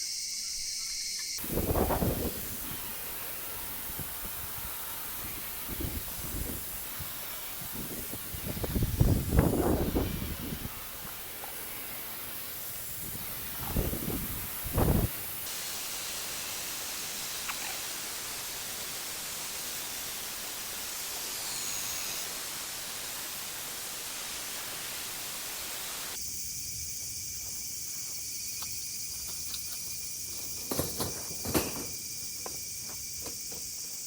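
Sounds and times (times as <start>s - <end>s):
crickets chirping: 0.0s - 34.0s
steady hiss: 1.2s - 34.0s
small clicks: 17.4s - 17.8s.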